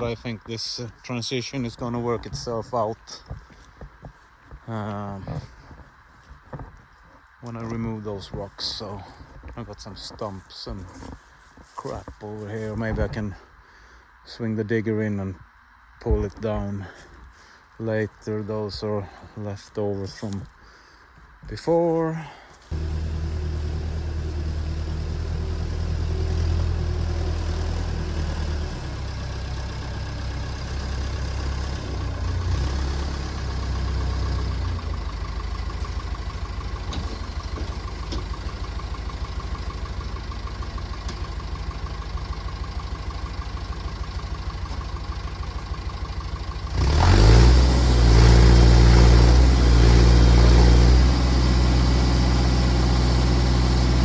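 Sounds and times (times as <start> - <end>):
backhoe engine running and revving: 22.7 - 54.0.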